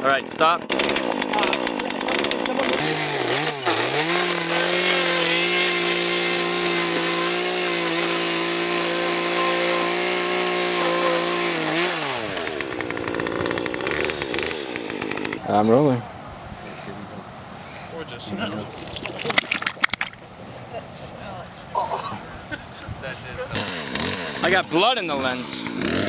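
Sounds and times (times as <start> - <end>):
chainsaw engine revving: 0.0 - 15.5, 23.4 - 26.0.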